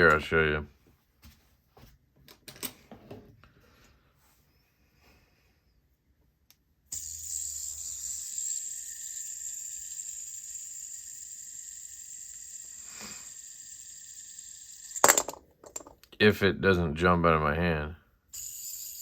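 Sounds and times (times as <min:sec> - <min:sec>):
fidget spinner whirring: 0:06.9 - 0:15.4, 0:18.3 - 0:19.0.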